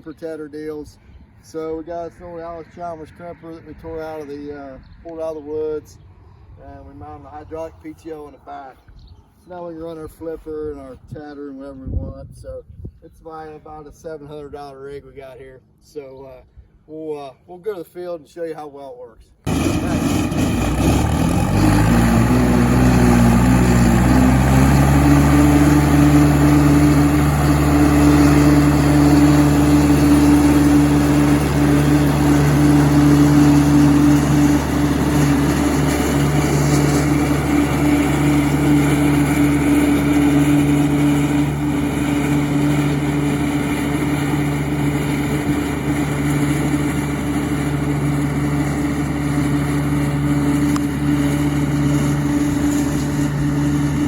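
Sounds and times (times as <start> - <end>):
tractor engine running: 19.5 - 54.0.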